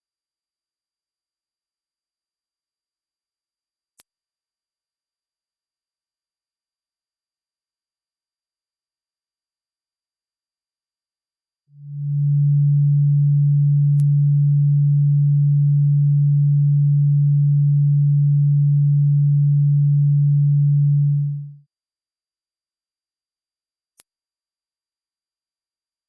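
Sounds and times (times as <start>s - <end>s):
high-pitched whistle tone: 11.8s - 21.6s
loud low hum tone: 11.8s - 21.6s.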